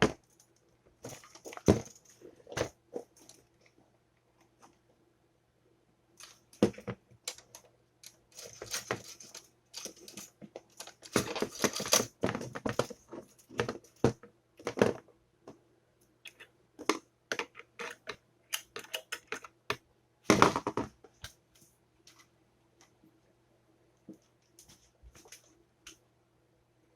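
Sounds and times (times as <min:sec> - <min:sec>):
toaster parts clicking and rattling: 0:07.3 - 0:14.0.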